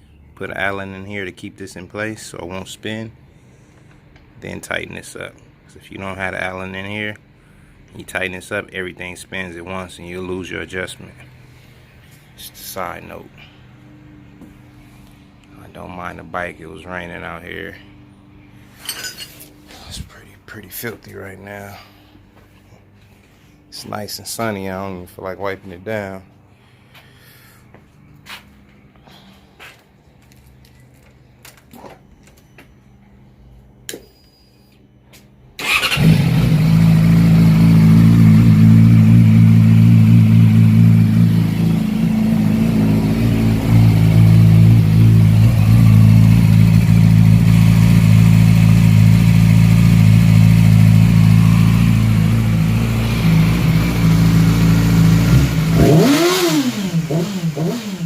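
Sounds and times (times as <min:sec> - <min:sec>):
motorcycle engine running and revving: 0:35.9 - 0:58.0.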